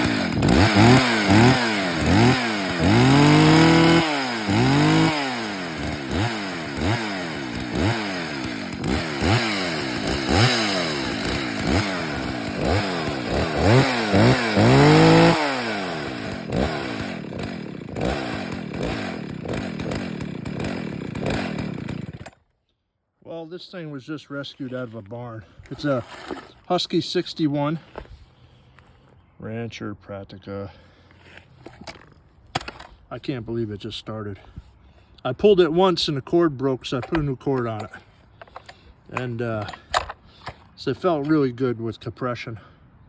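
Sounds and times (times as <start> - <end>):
chainsaw revving: 0.0 - 22.4, 36.9 - 41.2.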